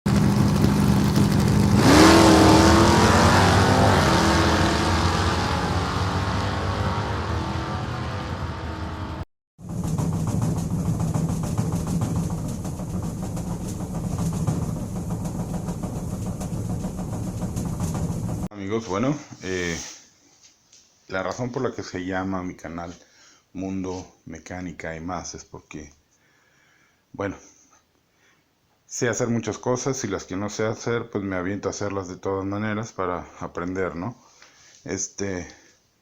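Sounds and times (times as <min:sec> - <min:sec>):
car engine idling and revving: 0:00.1 - 0:18.5.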